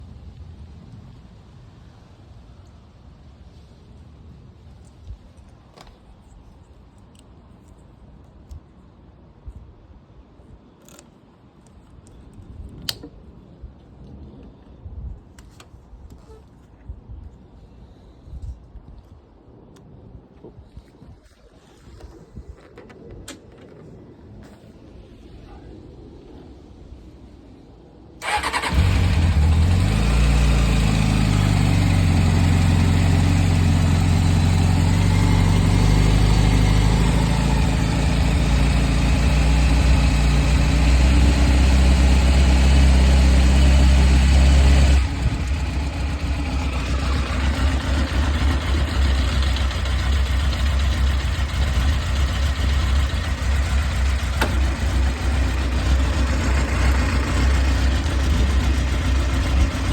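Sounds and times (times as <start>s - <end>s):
engine whirring: 28.2s - 59.9s
motorcycle engine idling: 28.2s - 59.9s.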